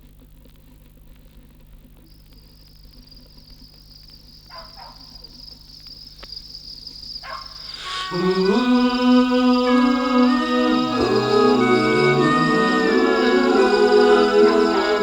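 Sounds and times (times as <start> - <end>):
vinyl surface noise hum: 0.0 - 4.4
crickets trilling: 1.8 - 15.0.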